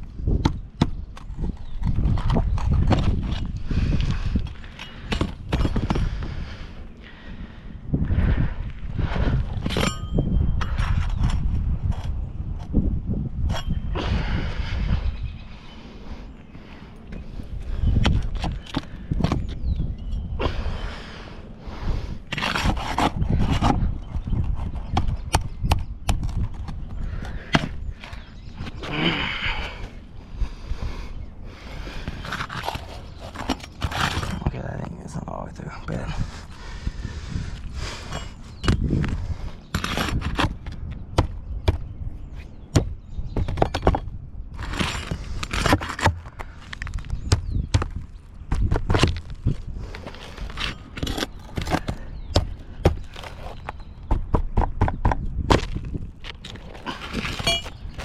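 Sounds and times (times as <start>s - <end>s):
hard objects scraping: 20.5s - 24.8s, 31.6s - 35.0s, 44.6s - 47.2s, 48.8s - 53.9s, 55.6s - 58.0s
rough scraping strokes: 21.9s - 23.8s, 56.3s - 58.0s.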